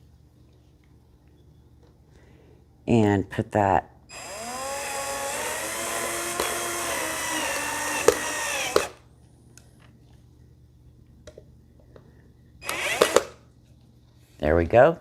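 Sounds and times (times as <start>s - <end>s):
power drill driving screw: 4.1s - 9.0s, 12.6s - 13.4s.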